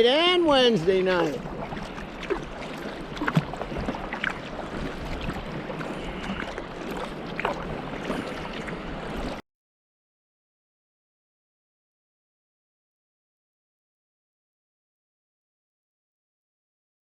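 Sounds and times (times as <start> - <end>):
water splashing and lapping: 0.0 - 9.4
wind rumble on microphone: 0.0 - 9.4.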